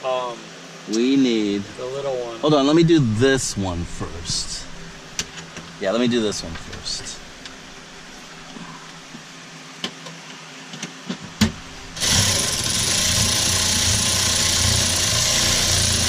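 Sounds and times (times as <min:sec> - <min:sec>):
power tool driving a bolt: 0:11.4 - 0:16.0.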